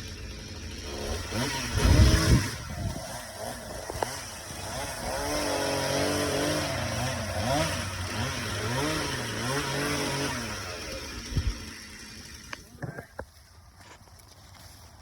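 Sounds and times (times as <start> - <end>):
chainsaw revving: 0.0 - 13.2.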